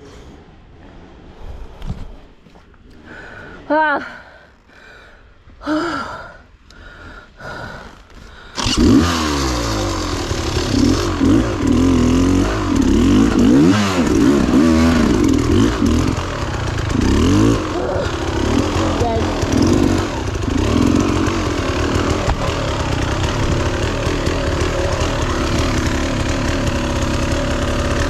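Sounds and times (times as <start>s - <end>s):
dirt bike engine revving: 8.6s - 28.0s.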